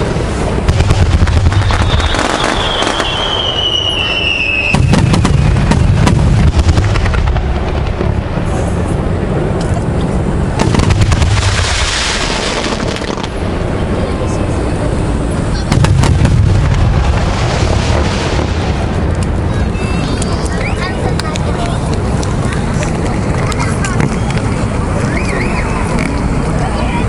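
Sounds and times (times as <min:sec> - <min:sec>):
firework shells booming: 0:00.0 - 0:13.5, 0:15.7 - 0:19.4
firework crackling: 0:00.0 - 0:27.0
firework whistle falling in pitch: 0:01.5 - 0:05.3.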